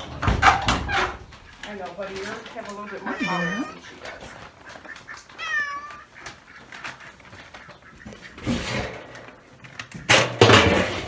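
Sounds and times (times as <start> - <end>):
scraping or rustling: 0.0 - 11.0
cat meowing: 2.9 - 4.2, 5.0 - 6.3.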